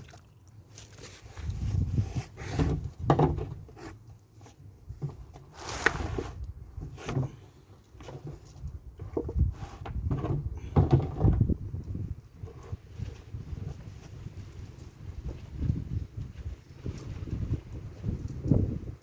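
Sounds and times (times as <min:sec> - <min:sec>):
clunks and knocks from car work: 0:02.6 - 0:03.7, 0:08.0 - 0:11.6.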